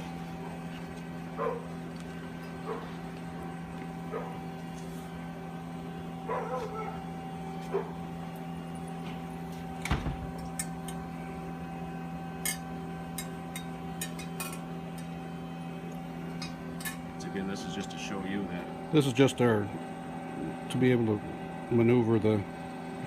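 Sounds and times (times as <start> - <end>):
steady electrical hum: 0.0 - 23.0.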